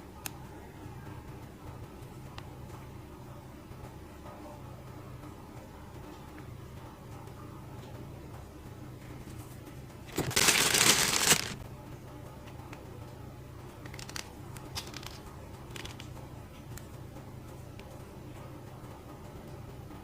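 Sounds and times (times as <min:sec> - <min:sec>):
packaging rustling: 0:10.1 - 0:11.6.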